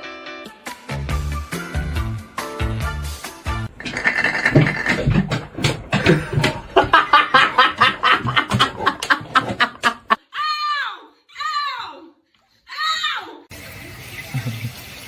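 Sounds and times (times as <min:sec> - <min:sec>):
background music with bass: 0:00.7 - 0:03.7
person laughing: 0:05.8 - 0:10.2.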